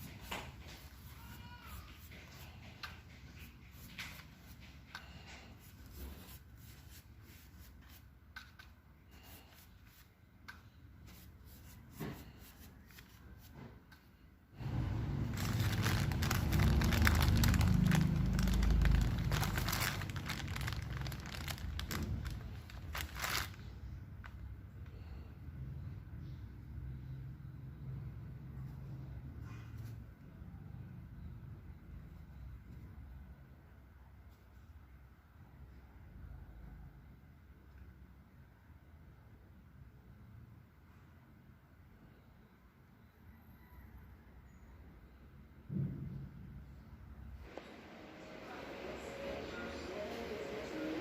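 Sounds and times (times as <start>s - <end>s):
crinkling and rustling handling noise: 0.0s - 24.6s
low rumble: 14.6s - 23.3s.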